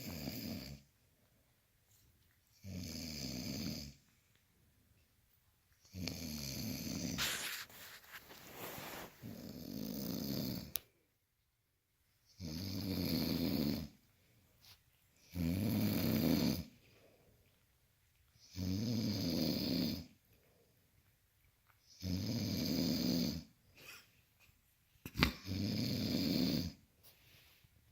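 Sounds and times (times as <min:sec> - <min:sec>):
loud rasping snores: 0:00.0 - 0:00.8, 0:02.6 - 0:04.0, 0:05.9 - 0:07.2, 0:09.2 - 0:10.7, 0:12.4 - 0:13.9, 0:15.3 - 0:16.7, 0:18.5 - 0:20.1, 0:22.0 - 0:23.5, 0:25.4 - 0:26.8.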